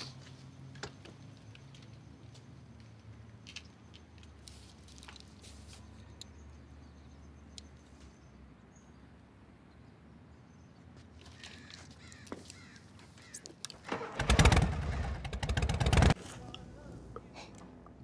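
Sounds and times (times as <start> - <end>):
crows cawing: 11.2 - 13.5
motorcycle engine starting: 13.8 - 16.2.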